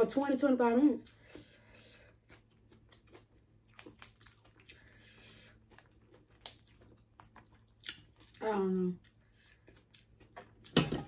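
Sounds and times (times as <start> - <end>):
chewing: 1.0 - 8.4, 9.0 - 10.8
crab shell clicking and crackling: 3.8 - 4.6.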